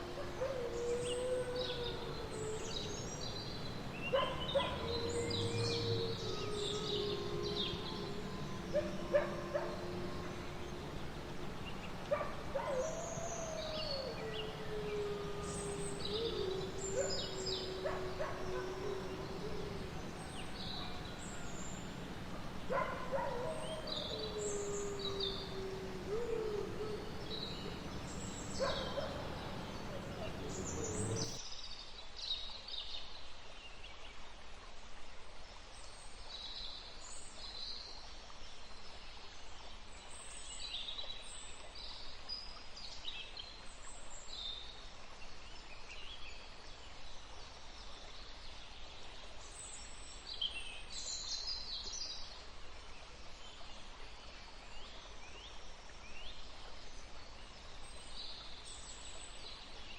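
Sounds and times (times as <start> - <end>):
small birds chirping: 0.0 - 31.4
wolf howls: 0.0 - 31.4.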